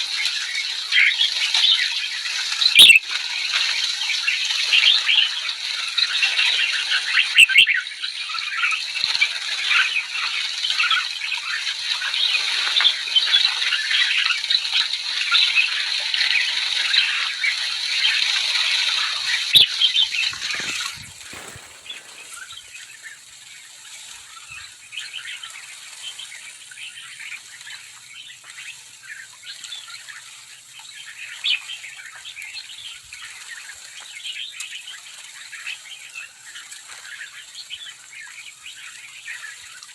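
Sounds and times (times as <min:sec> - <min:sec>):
flock of birds chattering: 0:02.8 - 0:03.0, 0:19.3 - 0:22.7.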